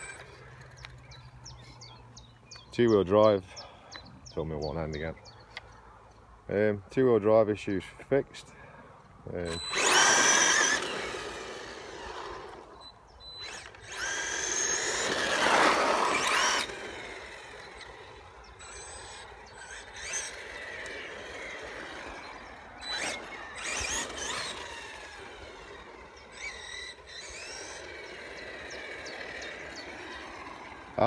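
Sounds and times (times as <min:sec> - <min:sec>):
electric motor whining: 0:00.0 - 0:01.6, 0:09.4 - 0:31.0.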